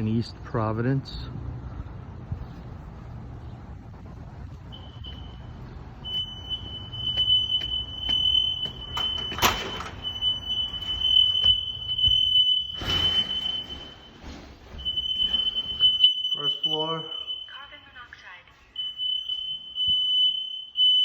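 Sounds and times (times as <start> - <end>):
smoke alarm tone: 4.7 - 18.1, 18.7 - 21.0.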